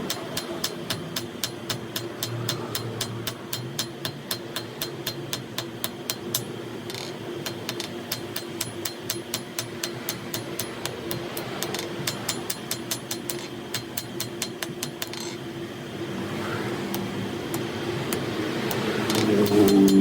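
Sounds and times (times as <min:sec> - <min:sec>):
hammer striking metal: 0:00.0 - 0:15.3, 0:18.7 - 0:20.0
steady hum: 0:00.0 - 0:20.0
engine running: 0:15.9 - 0:20.0.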